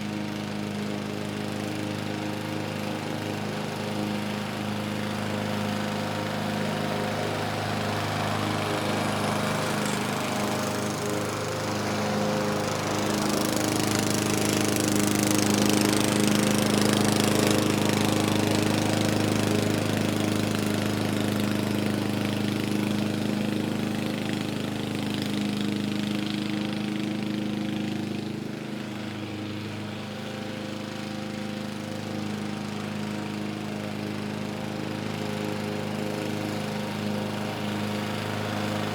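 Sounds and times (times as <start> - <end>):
lawn mower engine running: 0.0 - 38.9.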